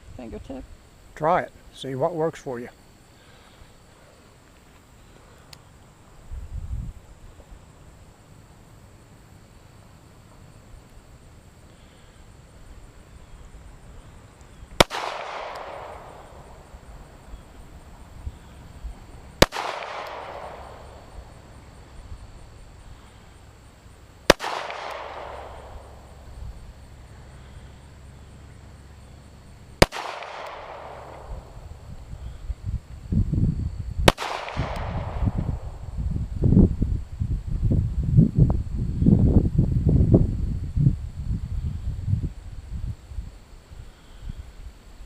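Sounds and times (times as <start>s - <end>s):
handgun shots with echo: 14.8s - 16.3s, 19.4s - 20.8s, 24.3s - 25.9s, 29.8s - 31.4s, 34.1s - 35.4s.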